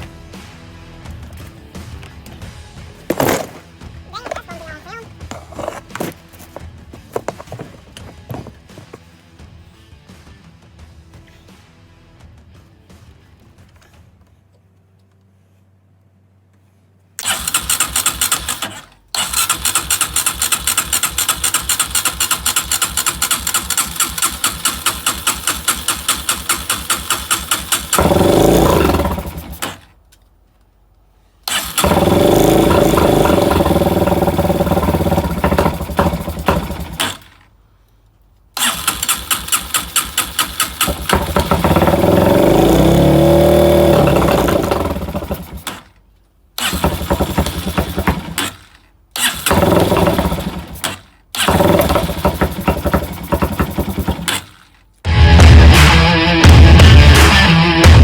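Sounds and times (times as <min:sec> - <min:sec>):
dirt bike engine cranking and running: 0:05.3 - 0:06.6, 0:17.2 - 0:30.1, 0:31.4 - 0:37.6, 0:38.5 - 0:58.0.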